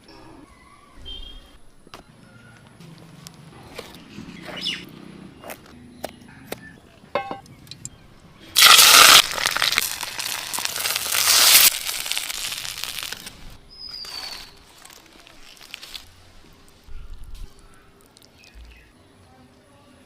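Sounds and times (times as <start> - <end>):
fish sizzling in hot oil: 8.6 - 13.4.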